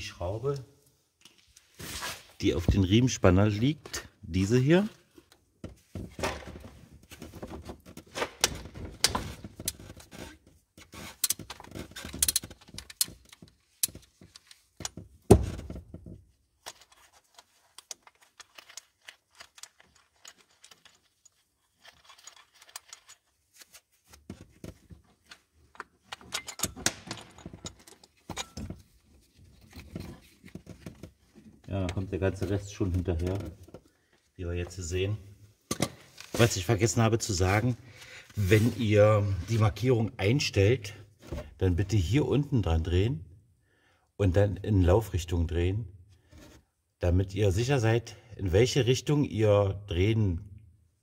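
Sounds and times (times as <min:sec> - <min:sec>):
metal tools clinking and scraping: 0:16.7 - 0:23.3, 0:26.0 - 0:28.9.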